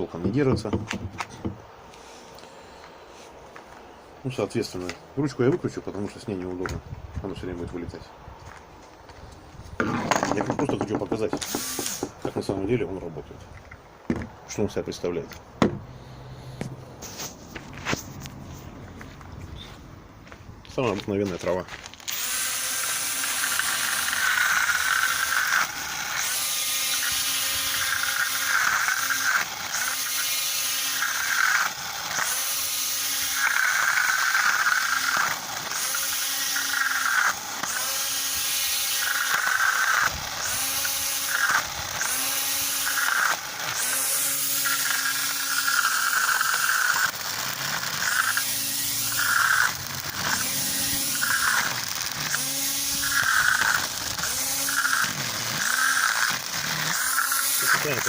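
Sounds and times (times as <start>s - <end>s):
string trimmer motor whining: 11.4s - 12.2s, 22.0s - 58.0s.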